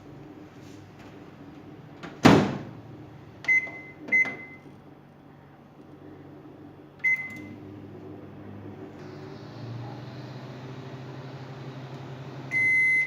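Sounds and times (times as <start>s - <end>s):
microwave oven humming: 0.0s - 13.0s
microwave door shutting: 2.0s - 2.7s
keypad beeps: 3.5s - 4.6s, 7.0s - 7.5s.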